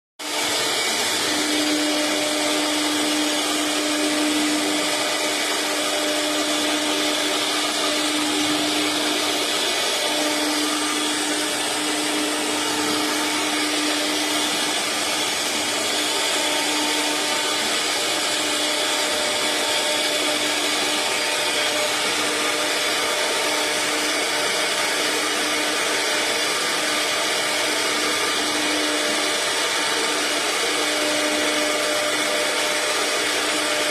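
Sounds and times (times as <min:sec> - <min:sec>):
router spindle cutting wood: 0:00.2 - 0:33.9.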